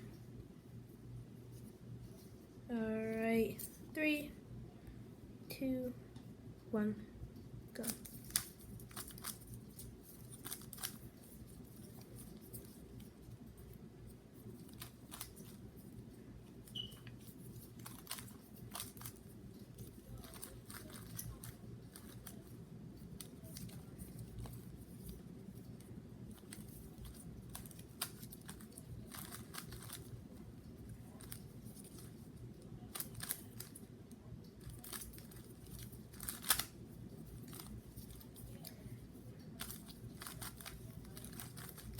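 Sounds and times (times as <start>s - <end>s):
low steady hum: 0.0s - 41.9s
plastic puzzle cube clicking: 26.4s - 30.1s, 32.9s - 33.8s, 34.7s - 36.7s, 39.6s - 41.9s.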